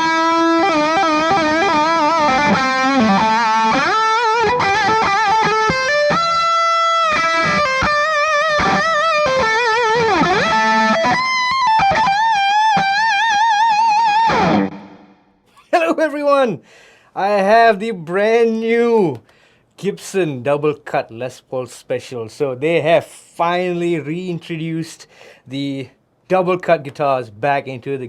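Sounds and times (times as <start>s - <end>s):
electric guitar lead line: 0.0s - 15.3s.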